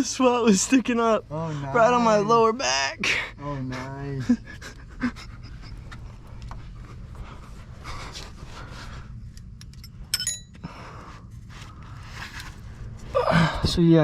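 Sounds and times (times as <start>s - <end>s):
steady low hum: 0.0s - 14.0s
metallic clink and rattle: 9.5s - 10.6s
person breathing hard: 10.6s - 13.7s.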